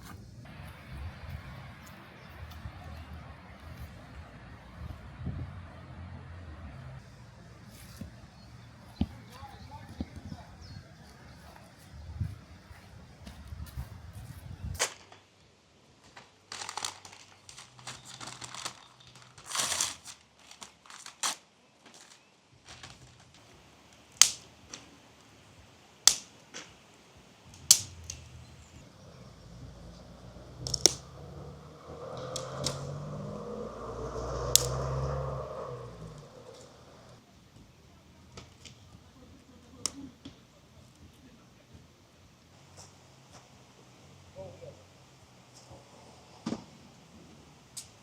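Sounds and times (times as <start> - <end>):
brief rustling: 16.0 - 23.5
sharp clicks: 30.6 - 31.1.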